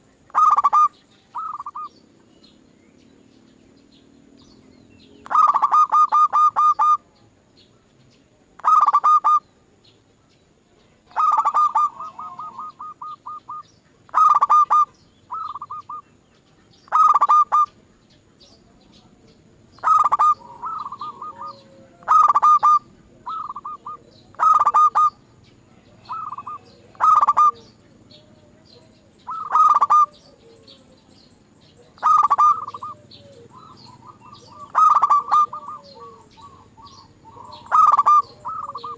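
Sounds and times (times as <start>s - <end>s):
doves cooing: 0.0s - 1.9s, 5.2s - 7.1s, 8.6s - 9.4s, 11.1s - 16.1s, 16.9s - 17.8s, 19.7s - 38.9s.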